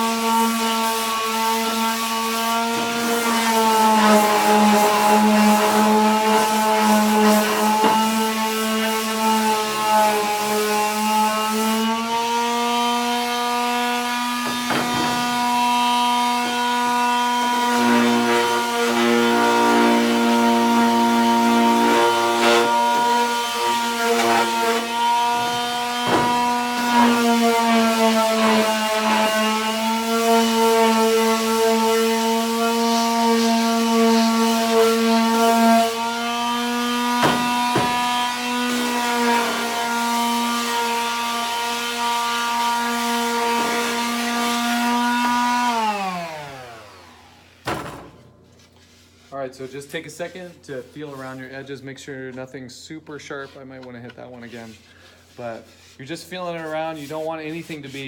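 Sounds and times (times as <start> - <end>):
wood grinding against sander: 0.0 - 47.5, 48.6 - 58.0
sharp knocks: 14.4 - 15.3, 37.2 - 38.0
electric sander motor whine: 32.5 - 47.6.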